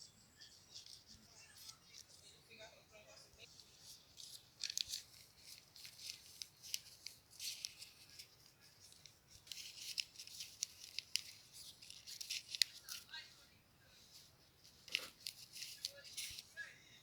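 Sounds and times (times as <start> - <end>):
hands rustling craft materials: 0.3 - 2.5, 3.4 - 16.7.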